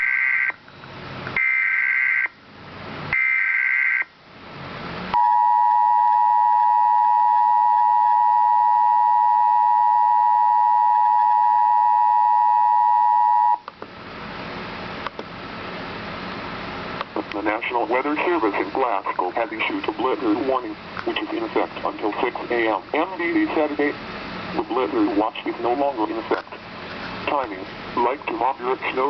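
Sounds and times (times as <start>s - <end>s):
two-tone attention signal: 5.2s - 13.6s.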